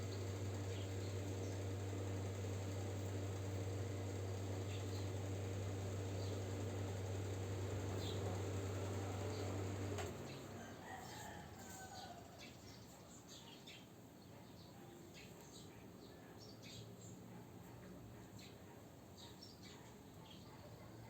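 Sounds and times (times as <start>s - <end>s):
low electric motor hum: 0.0s - 12.9s.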